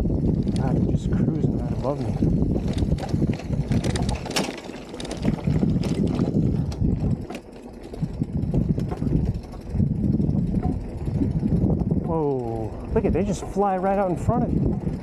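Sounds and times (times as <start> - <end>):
bicycle frame rattling: 0.0 - 15.0
bicycle tyres rolling: 0.0 - 15.0
wind buffeting microphone: 0.0 - 15.0.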